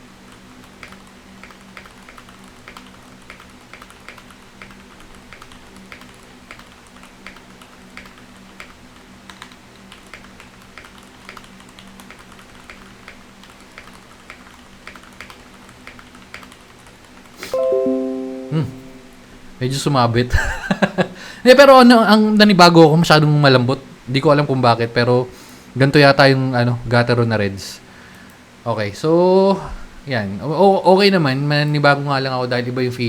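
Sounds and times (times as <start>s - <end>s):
mechanical keyboard typing: 0.3s - 17.3s
music with held notes: 17.6s - 19.3s.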